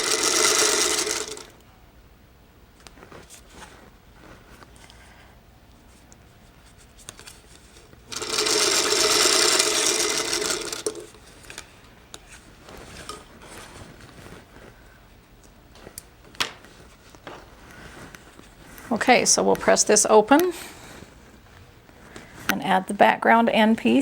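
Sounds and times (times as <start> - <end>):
sewing machine stitching: 0.0 - 1.5, 8.1 - 11.1.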